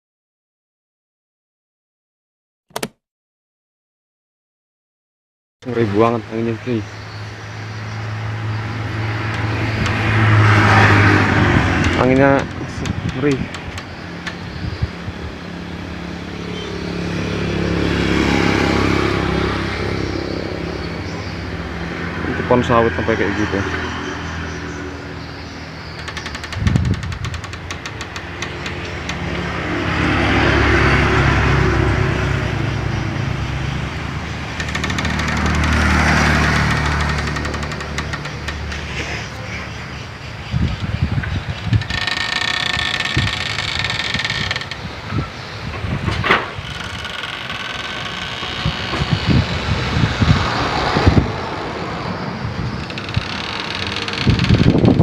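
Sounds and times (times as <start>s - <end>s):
low engine hum: 6.9s - 55.0s
wind buffeting microphone: 8.6s - 16.1s, 25.1s - 29.6s, 40.3s - 55.0s
storm wind gusting: 48.6s - 53.4s, 54.0s - 55.0s.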